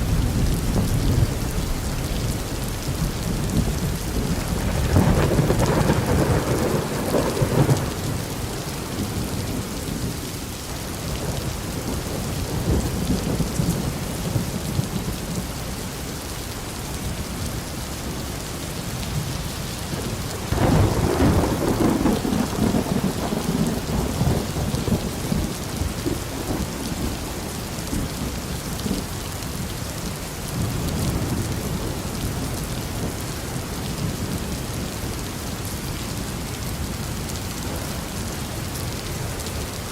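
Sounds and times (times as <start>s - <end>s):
thunder rumbling: 0.0s - 15.4s, 19.9s - 29.1s
heavy rain: 0.0s - 39.9s.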